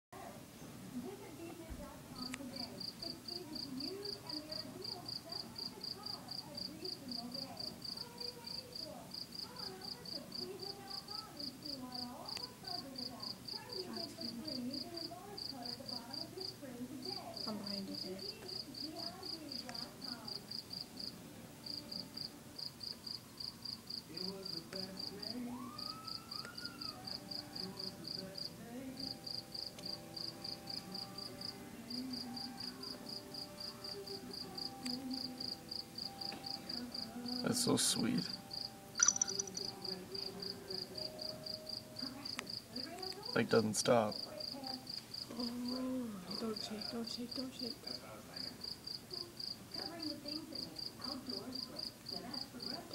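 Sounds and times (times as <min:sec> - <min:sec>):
cricket chirping: 0:17.4 - 0:37.5, 0:38.3 - 0:43.4, 0:46.4 - 0:50.6.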